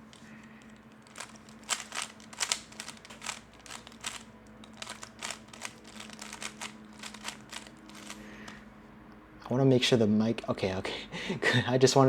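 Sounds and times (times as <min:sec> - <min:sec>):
sharp clicks and clacks: 0:00.0 - 0:08.6.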